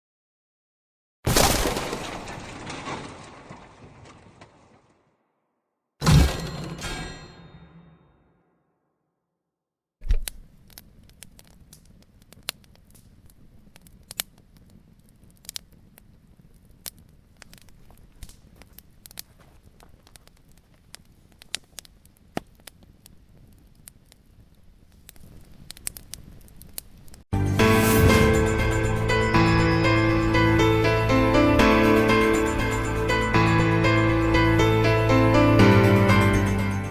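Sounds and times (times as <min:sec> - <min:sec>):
wood crackling and popping: 0:01.3 - 0:05.1, 0:10.0 - 0:27.3
low steady fire hiss: 0:10.0 - 0:27.3.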